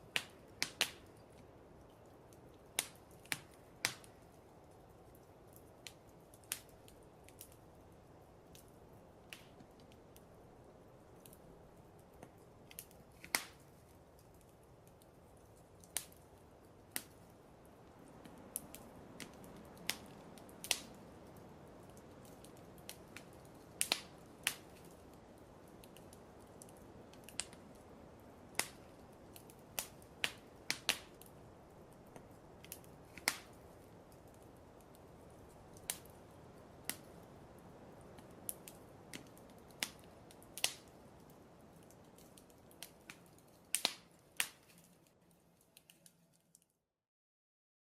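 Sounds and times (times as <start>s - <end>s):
fire crackling and popping: 0.0s - 46.8s
soft steady hiss: 0.0s - 46.8s.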